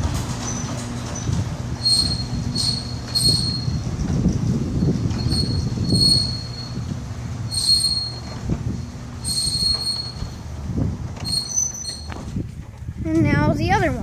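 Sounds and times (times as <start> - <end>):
garage door rumbling: 0.0 - 14.0
high metallic squeal: 0.4 - 6.9, 7.5 - 8.4, 9.2 - 10.4, 11.2 - 12.2.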